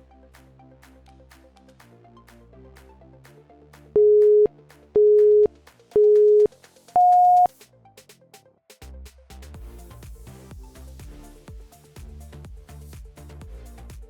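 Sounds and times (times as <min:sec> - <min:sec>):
quiet electronic background music: 0:00.0 - 0:14.0
higher-pitched beep: 0:04.0 - 0:07.5
interval timer beeps: 0:04.0 - 0:07.5.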